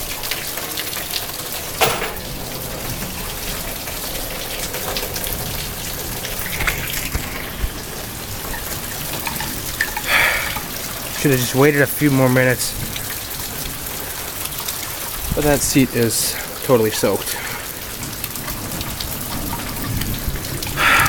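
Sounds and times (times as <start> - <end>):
heavy rain falling: 0.0 - 21.0
sharp knocks: 1.8 - 2.3.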